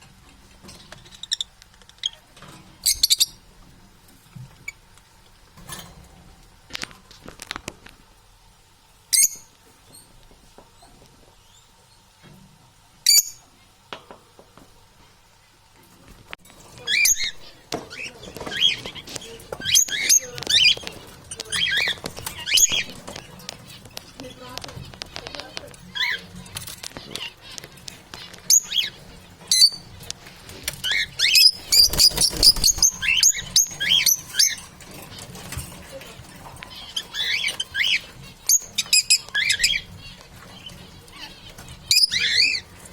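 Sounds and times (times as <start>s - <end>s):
parrots chirping and squawking: 0.6s - 3.5s, 9.1s - 9.5s, 16.6s - 42.9s
parrot squawking: 30.8s - 34.6s.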